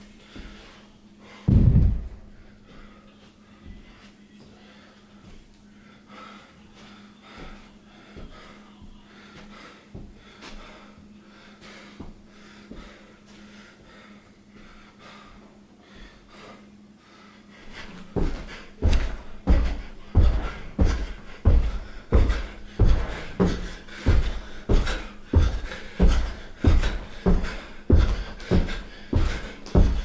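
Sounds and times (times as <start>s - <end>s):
person breathing heavily: 0.2s - 30.0s
loud thumps: 1.5s - 2.5s.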